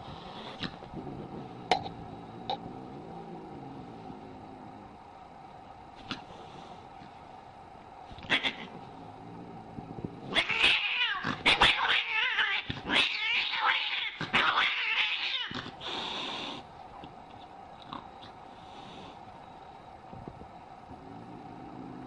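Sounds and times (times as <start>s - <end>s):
cat hissing: 0.0s - 1.3s, 8.2s - 16.7s
cat yowling: 8.2s - 8.7s, 10.3s - 15.6s.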